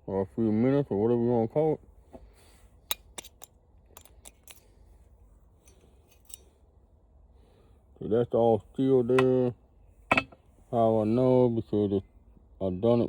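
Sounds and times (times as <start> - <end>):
faint low hum: 0.0 - 13.0
light sharp clicks of tools: 2.9 - 4.8, 5.6 - 6.6.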